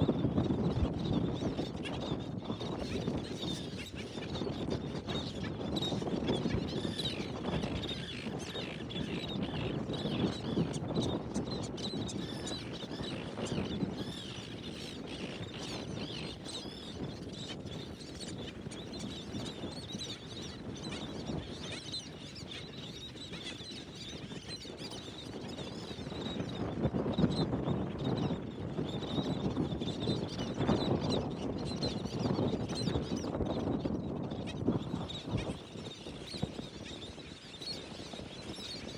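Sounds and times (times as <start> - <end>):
wind buffeting microphone: 0.0 - 38.9
shorebirds calling: 6.0 - 25.9.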